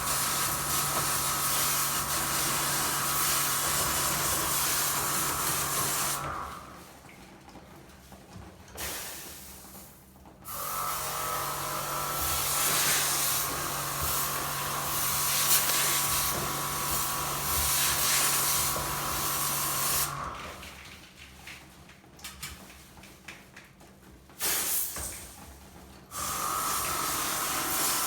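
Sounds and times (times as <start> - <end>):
pressure washer water jet hissing: 0.0 - 6.2, 12.1 - 20.2, 26.2 - 28.0
pump motor humming: 0.0 - 7.1, 10.5 - 20.6, 26.1 - 28.0.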